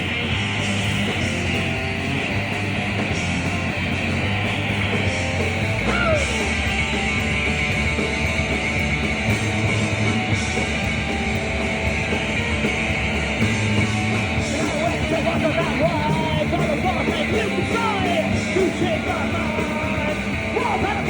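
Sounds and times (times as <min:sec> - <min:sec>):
distorted electric guitar: 0:00.0 - 0:21.0
punk rock band playing: 0:00.0 - 0:21.0
singer shouting vocals: 0:05.8 - 0:06.5, 0:14.5 - 0:21.0.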